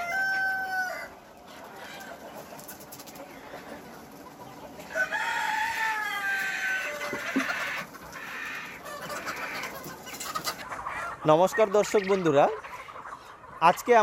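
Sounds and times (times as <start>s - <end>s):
rooster crowing: 0.0s - 1.1s, 4.9s - 7.8s
chickens clucking: 0.0s - 14.0s.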